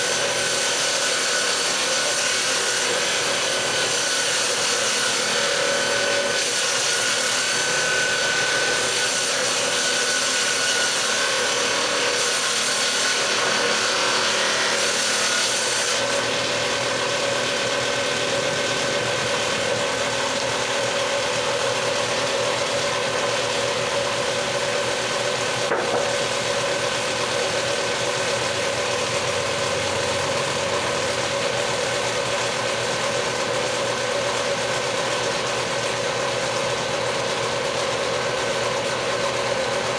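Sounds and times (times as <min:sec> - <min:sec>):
power tool cutting wood: 0:00.0 - 0:39.9.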